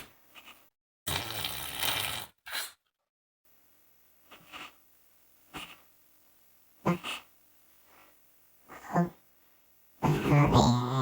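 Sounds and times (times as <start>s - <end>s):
fart sounds: 1.1s - 2.7s.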